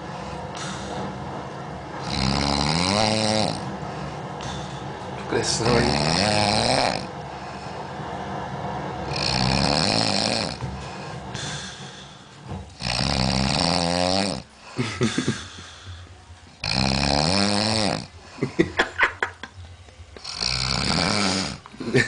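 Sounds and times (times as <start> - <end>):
quiet breathing: 0.0 - 1.2, 3.7 - 5.2, 10.7 - 12.6, 14.5 - 16.6
man snoring heavily: 2.0 - 3.7, 5.7 - 7.2, 9.0 - 10.6, 11.3 - 14.5, 16.6 - 18.2, 20.2 - 21.7.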